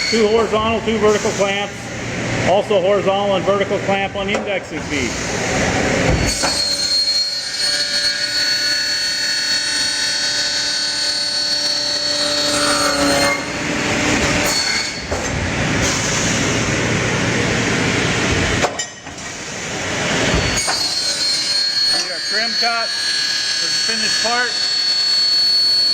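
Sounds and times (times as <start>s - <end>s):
circular saw cutting metal: 6.2s - 15.2s, 19.8s - 25.9s.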